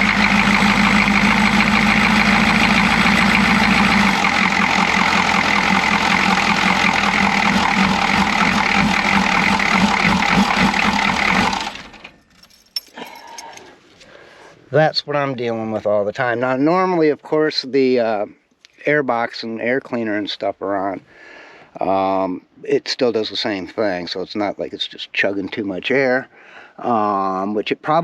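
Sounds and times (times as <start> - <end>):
diesel engine rough idle: 0.0 - 12.2.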